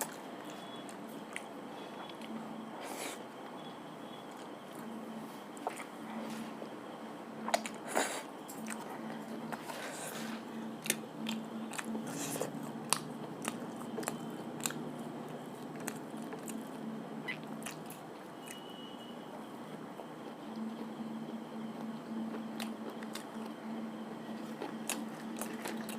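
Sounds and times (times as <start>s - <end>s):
steady low hum: 0.0s - 25.9s
biting and chewing crunches: 7.4s - 18.6s, 22.3s - 25.9s.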